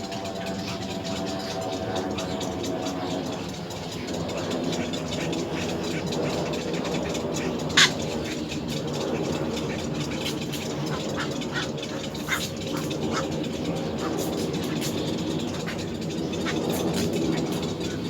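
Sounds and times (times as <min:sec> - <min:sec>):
bird chicks calling: 0:00.0 - 0:18.0
steady low rumble: 0:00.0 - 0:18.0.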